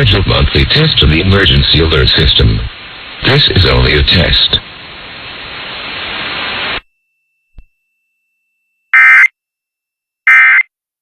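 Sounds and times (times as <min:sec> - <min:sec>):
radio static hiss: 0:00.0 - 0:06.8.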